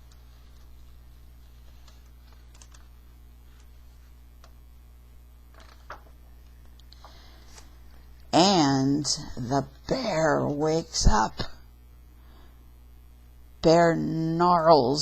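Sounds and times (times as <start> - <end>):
low electrical hum: 0.0 - 15.0
faint clicks and ticks: 1.7 - 3.8.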